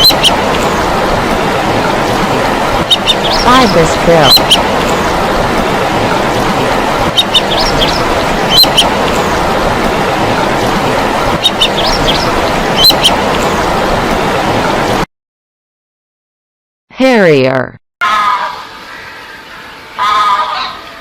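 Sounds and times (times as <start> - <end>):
bird piping calls: 0.0 - 0.6, 2.9 - 5.0, 7.1 - 9.3, 11.4 - 13.2
steady rushing background noise: 0.0 - 15.1.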